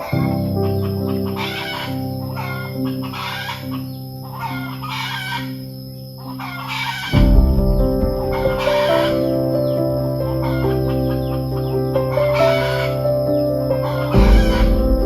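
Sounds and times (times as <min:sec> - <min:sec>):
chickens calling: 0:00.0 - 0:05.6, 0:06.2 - 0:07.2
background music with held notes: 0:00.0 - 0:15.0.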